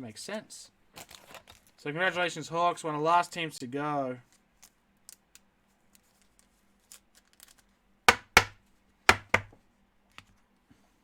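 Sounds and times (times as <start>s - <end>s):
sharp knocks: 8.1s - 9.6s.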